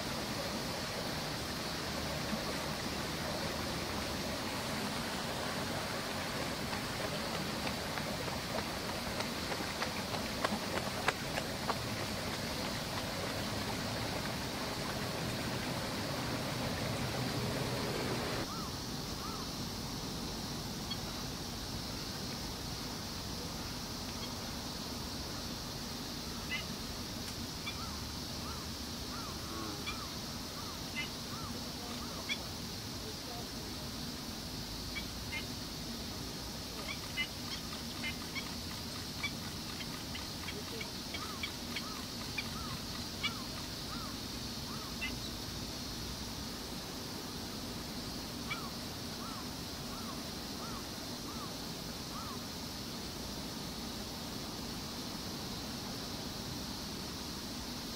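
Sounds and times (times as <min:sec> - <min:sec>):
outdoor background hiss: 0:00.0 - 0:57.9
faint bird calls: 0:06.4 - 0:19.5, 0:26.3 - 0:26.7, 0:27.6 - 0:32.5, 0:36.8 - 0:45.3, 0:48.4 - 0:52.4.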